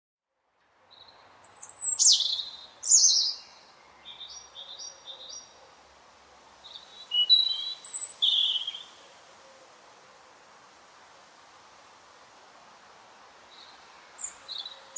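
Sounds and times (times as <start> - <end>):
faint outdoor hiss: 0.2 - 14.9
robin singing: 0.9 - 5.6, 6.6 - 9.0, 13.5 - 14.9.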